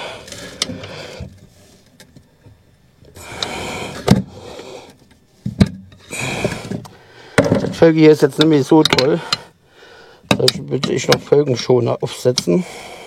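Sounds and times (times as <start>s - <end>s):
sharp metallic clicks: 8.3s - 9.5s.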